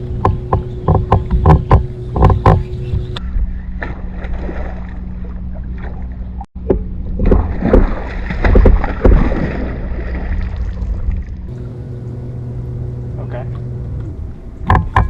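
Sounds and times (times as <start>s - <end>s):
low hum: 0.0s - 15.0s
knocks against boat: 0.2s - 3.1s, 6.7s - 9.4s, 14.6s - 15.0s.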